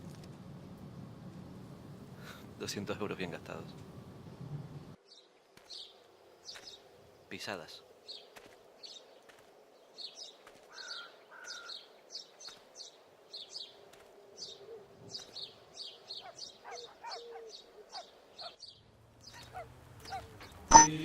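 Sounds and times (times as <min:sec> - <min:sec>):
small bird chirping: 0:05.0 - 0:06.9, 0:14.4 - 0:20.9.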